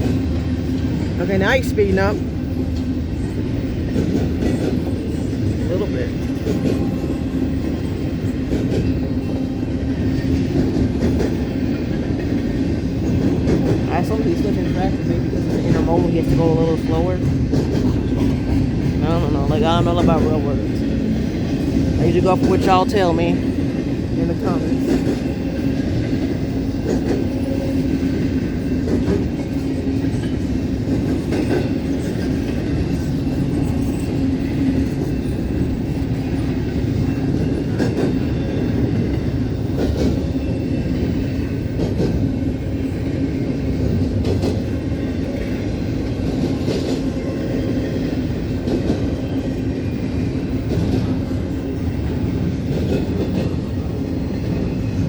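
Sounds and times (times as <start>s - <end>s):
wheels clacking over rail joints: 0.0s - 49.6s
train wheels rumbling on rails: 0.0s - 55.0s.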